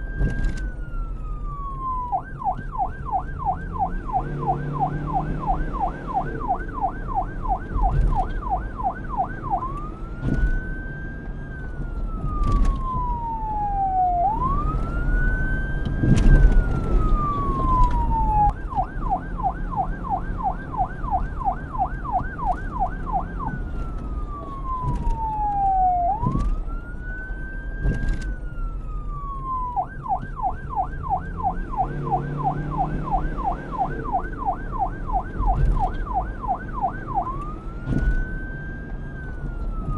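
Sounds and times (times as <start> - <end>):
police siren yelping and wailing: 0.0 - 39.9.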